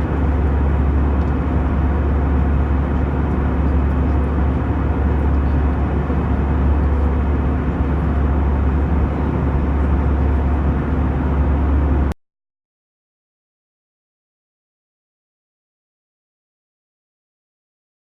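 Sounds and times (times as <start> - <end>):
airplane cabin engine drone: 0.0 - 12.2.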